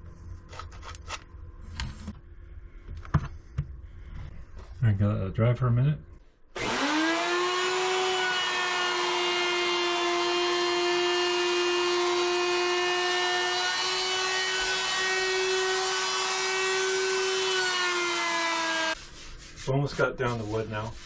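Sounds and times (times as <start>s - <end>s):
power tool motor whining: 6.6s - 19.0s.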